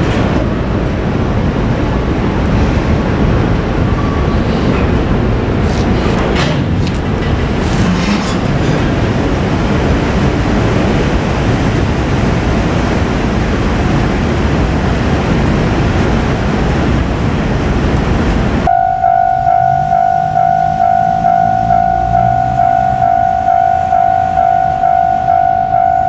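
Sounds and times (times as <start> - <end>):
train wheels rumbling on rails: 0.0 - 18.7
steady ringing tone: 18.7 - 26.0.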